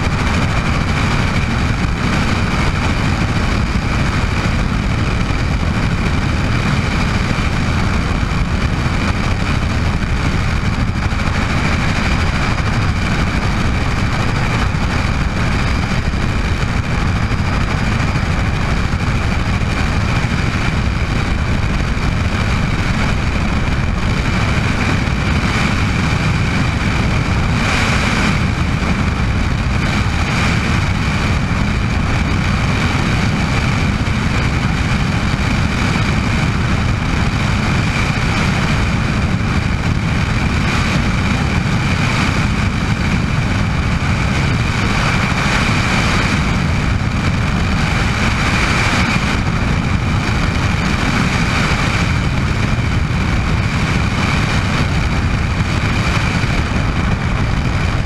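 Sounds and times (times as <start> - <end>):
helicopter rotor drone: 0.0 - 58.0
high turbine whine: 0.0 - 58.0.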